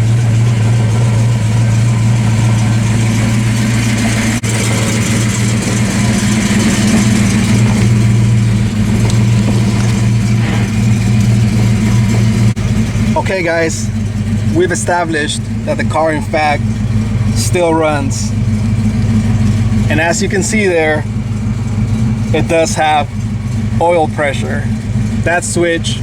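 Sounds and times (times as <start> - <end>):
car engine idling: 0.0 - 26.0.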